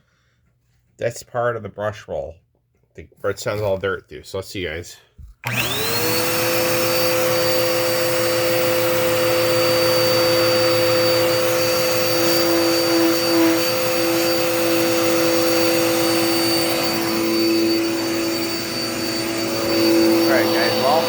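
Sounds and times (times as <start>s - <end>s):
vacuum cleaner motor whining: 5.4s - 21.0s.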